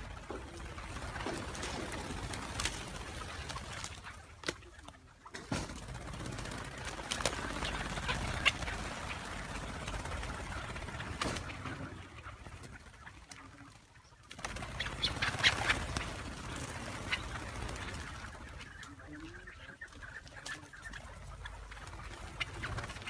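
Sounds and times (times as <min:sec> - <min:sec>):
partridges flapping wings: 0:00.0 - 0:23.0
partridges calling: 0:06.5 - 0:23.0.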